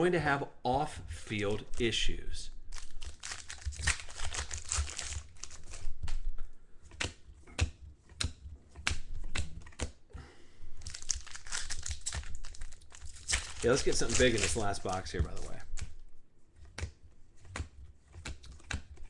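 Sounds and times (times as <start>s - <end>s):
cards crinkling and rustling: 2.7s - 6.3s, 10.8s - 16.0s, 16.6s - 19.0s.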